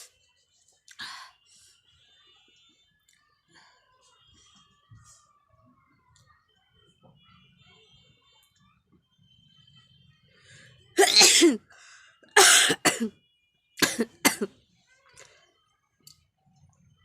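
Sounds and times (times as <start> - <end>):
woman sneezing: 11.0 - 11.6, 12.4 - 13.1, 13.8 - 14.5.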